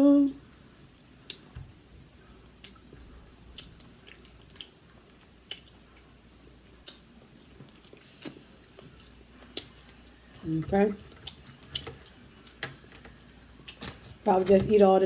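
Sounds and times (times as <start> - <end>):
chewing: 2.3 - 6.2, 6.8 - 10.4, 11.0 - 14.2
wet mouth clicks and smacks: 5.4 - 5.8, 6.8 - 7.1.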